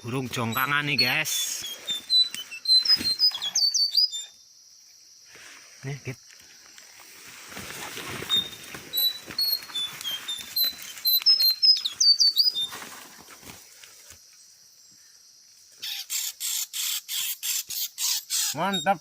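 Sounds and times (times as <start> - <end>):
bird chirping: 0.0 - 4.7, 8.2 - 12.8, 15.8 - 19.0.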